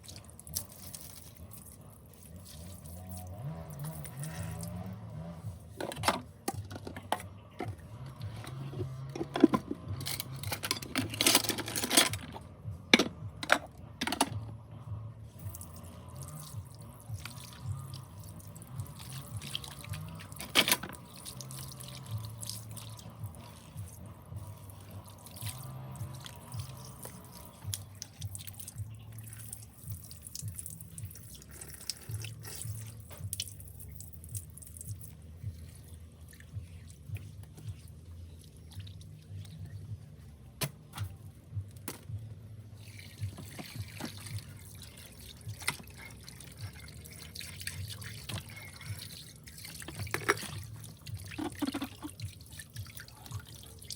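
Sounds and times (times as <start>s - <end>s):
tap water running into sink: 43.1s - 53.7s.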